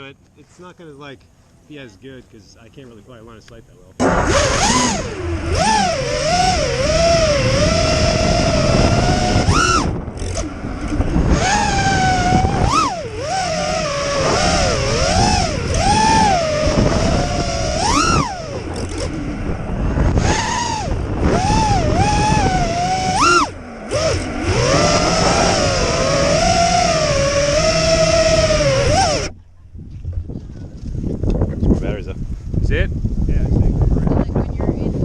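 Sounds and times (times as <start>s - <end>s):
drone propellers whining: 3.9s - 31.7s
low rumble: 4.0s - 35.0s.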